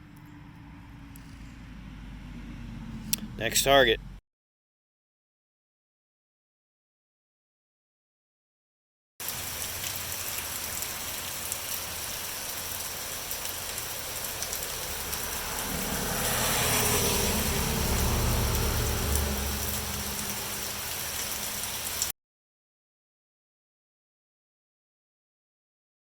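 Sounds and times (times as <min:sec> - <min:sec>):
steady rain falling: 0:09.2 - 0:22.1
low rumble: 0:14.4 - 0:21.9.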